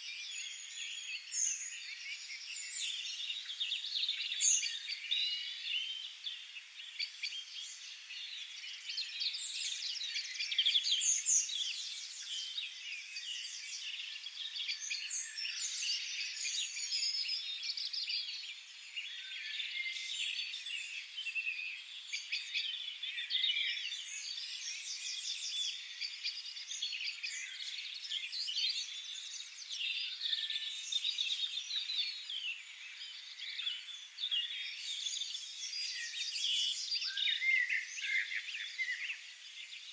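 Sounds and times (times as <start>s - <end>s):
songbirds chorus: 0.0s - 39.9s.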